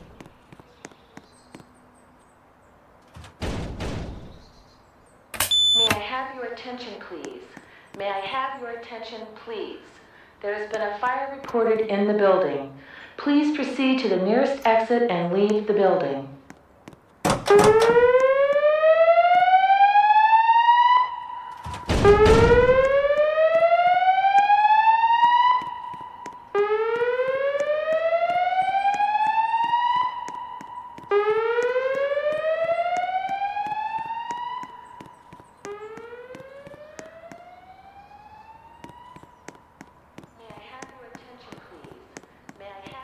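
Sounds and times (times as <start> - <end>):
thump: 3.1 - 4.5, 21.6 - 22.9
fire alarm whoop tone: 5.4 - 6.0, 17.5 - 35.0.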